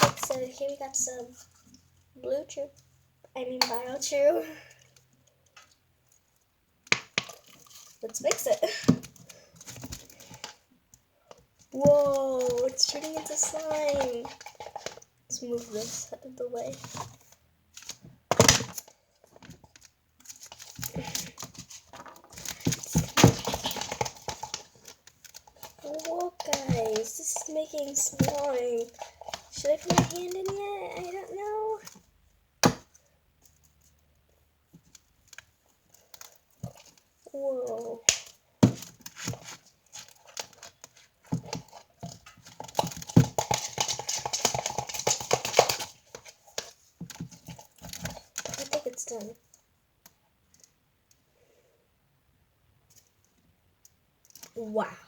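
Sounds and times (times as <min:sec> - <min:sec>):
slime squelching in bowl: 0:11.6 - 0:16.7, 0:20.1 - 0:32.1.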